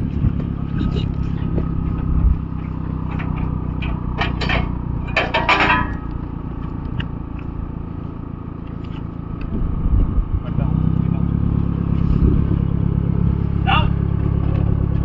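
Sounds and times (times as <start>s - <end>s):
knocks and scraping: 0.0s - 7.5s, 14.2s - 15.0s
off-road vehicle engine running: 0.0s - 15.0s.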